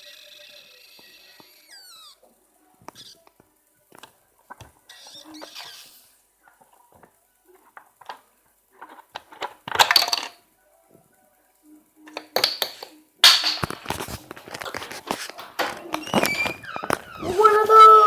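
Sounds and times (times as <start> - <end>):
short crackling bursts: 13.0 - 18.0.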